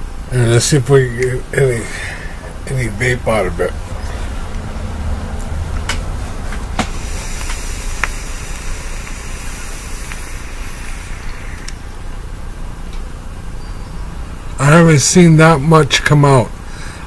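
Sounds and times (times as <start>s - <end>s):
vape coil hissing: 6.7s - 12.4s.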